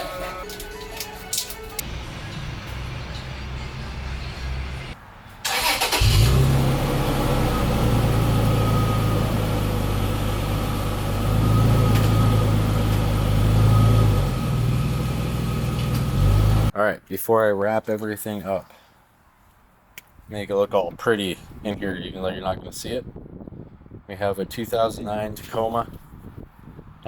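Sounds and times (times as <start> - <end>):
truck engine starting and idling: 1.3 - 16.7.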